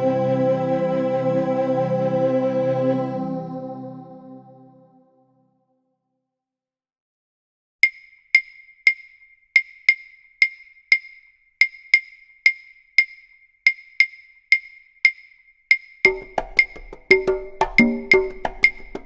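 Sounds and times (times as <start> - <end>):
wood block percussion clicks: 7.8 - 19.0.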